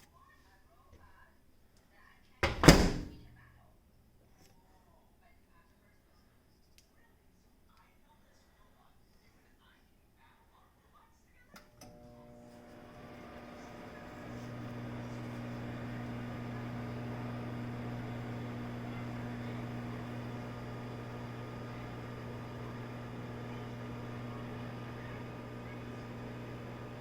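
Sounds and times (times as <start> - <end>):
microwave oven humming: 11.7 - 27.0.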